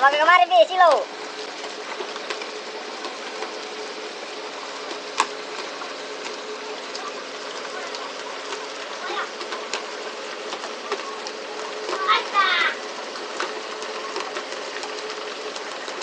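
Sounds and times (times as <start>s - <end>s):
boat engine humming: 0.0s - 16.0s
water washing: 0.0s - 16.0s.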